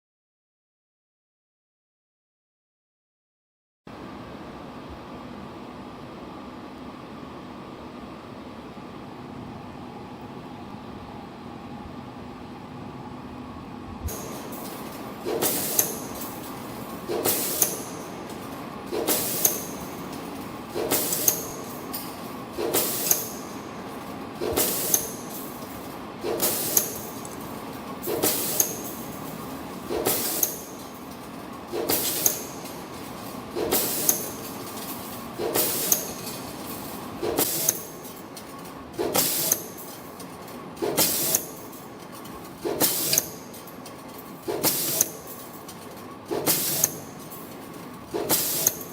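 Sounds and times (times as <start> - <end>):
machine sharp noise bursts: 14.1 - 40.2, 40.8 - 48.9.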